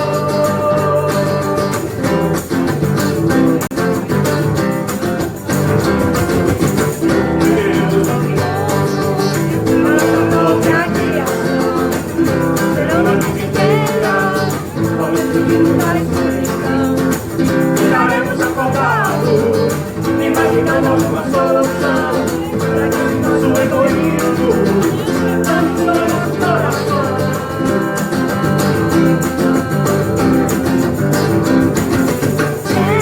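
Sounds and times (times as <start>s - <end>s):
person singing: 0.0s - 2.2s, 6.3s - 31.1s, 32.6s - 33.0s
guitar: 0.0s - 33.0s.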